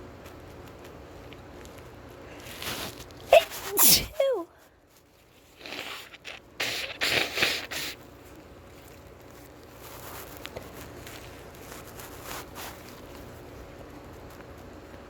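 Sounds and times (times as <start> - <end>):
person sneezing: 3.3 - 4.6, 5.6 - 8.0.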